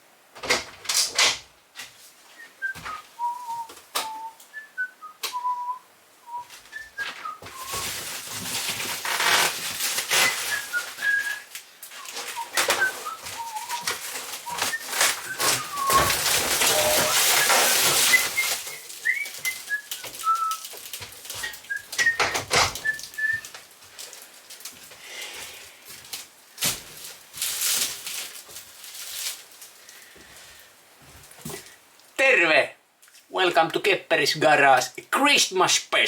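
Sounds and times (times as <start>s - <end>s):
steady hiss: 1.0s - 36.0s
person whistling a tune: 2.4s - 7.9s, 10.2s - 20.7s, 21.4s - 23.5s.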